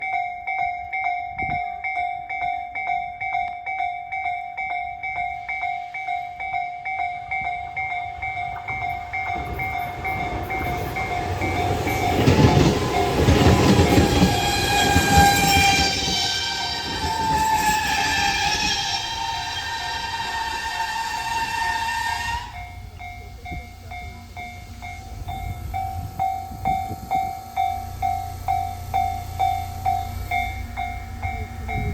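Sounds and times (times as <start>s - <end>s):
level-crossing warning bell ringing: 0.0s - 31.9s
train rumble: 3.0s - 31.9s
wheels clattering over rail joints: 7.7s - 18.9s.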